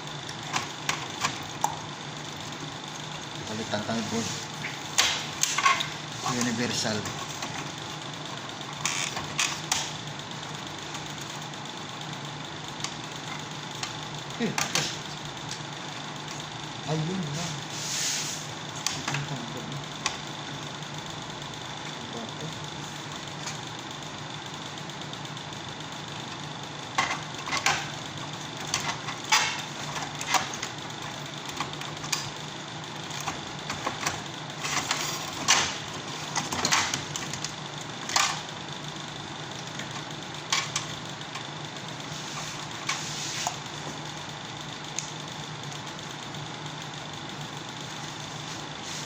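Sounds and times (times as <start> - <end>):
machine hum: 0.0 - 49.0
clicks and rattles of tools: 27.0 - 28.0.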